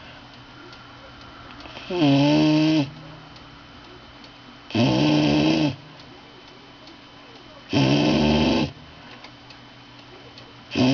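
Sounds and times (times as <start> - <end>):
dog snoring: 1.9 - 3.0, 4.7 - 5.8, 7.7 - 8.8.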